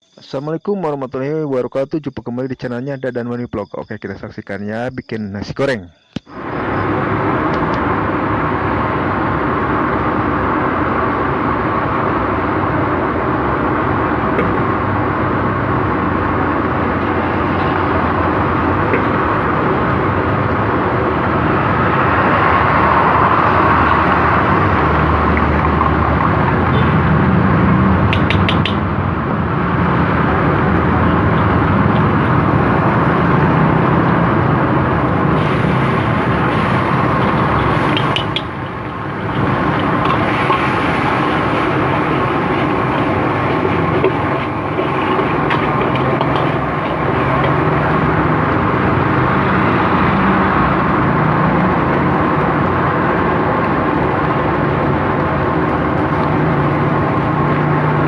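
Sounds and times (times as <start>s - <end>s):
rice frying in a wok: 30.4s - 58.0s.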